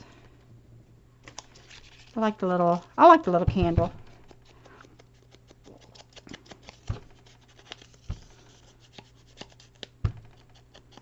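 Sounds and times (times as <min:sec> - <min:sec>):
soft thumps on table: 0:03.4 - 0:04.1.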